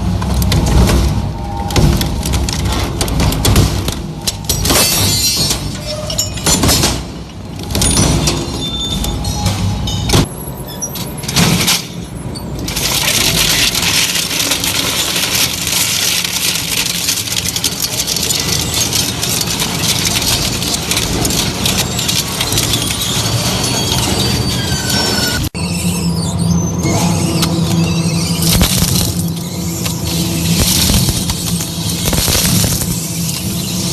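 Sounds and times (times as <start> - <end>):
crushing machine grinding: 0.0 - 9.3, 11.2 - 25.6, 27.2 - 33.9.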